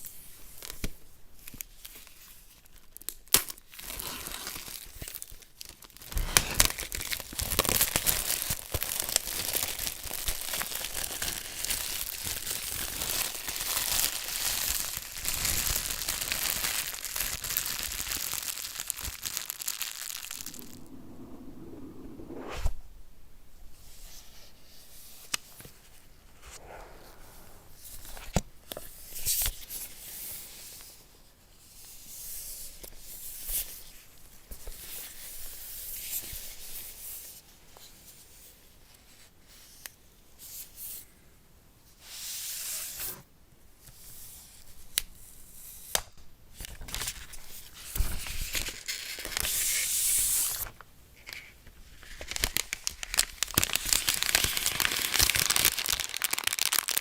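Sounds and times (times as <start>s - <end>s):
packaging tearing and crinkling: 3.0s - 20.9s, 46.8s - 50.7s, 51.3s - 57.0s.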